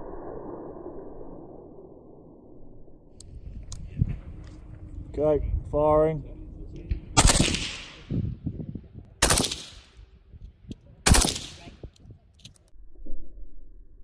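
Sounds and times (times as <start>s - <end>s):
rifle shots echoing: 7.2s - 8.2s, 9.2s - 10.0s, 11.0s - 11.9s.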